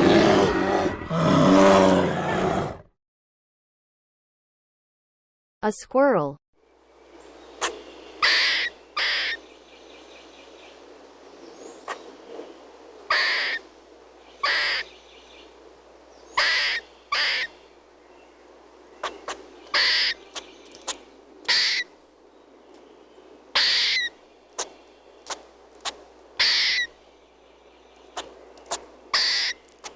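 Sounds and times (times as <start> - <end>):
squirrel chirping barks: 7.6 - 9.4, 13.1 - 13.6, 14.4 - 14.9, 16.4 - 17.6, 19.0 - 21.9, 23.5 - 27.0, 28.1 - 29.6.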